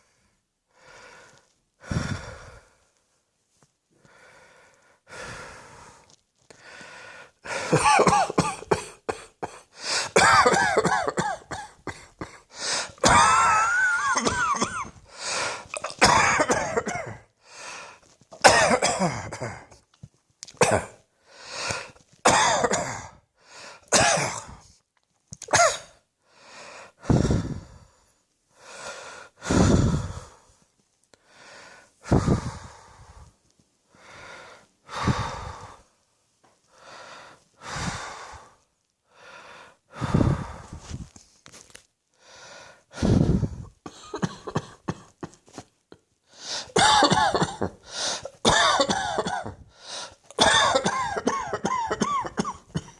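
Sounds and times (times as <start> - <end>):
wheezing breaths: 0.0 - 3.0, 4.0 - 7.8, 9.7 - 10.2, 12.0 - 13.0, 14.9 - 15.8, 17.4 - 18.2, 21.2 - 22.1, 26.2 - 36.0, 36.7 - 41.1, 42.1 - 44.1, 46.2 - 46.8, 47.8 - 48.4, 49.6 - 50.4
person coughing: 7.6 - 15.0, 15.6 - 17.3, 18.4 - 19.8, 20.6 - 21.0, 22.3 - 23.2, 23.9 - 24.6, 25.4 - 26.0, 43.4 - 45.6, 46.6 - 49.6, 50.3 - 52.9.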